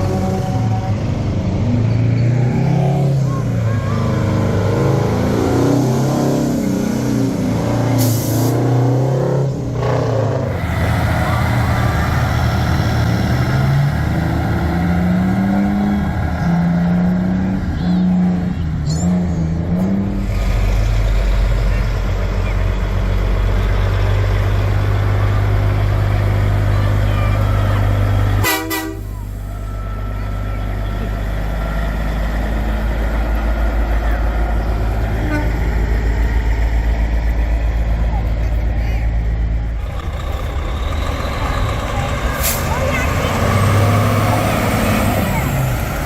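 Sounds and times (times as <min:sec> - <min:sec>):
diesel truck engine running: 0:00.0 - 0:46.0
two-pulse horn tone: 0:28.4 - 0:30.0, 0:35.2 - 0:35.7.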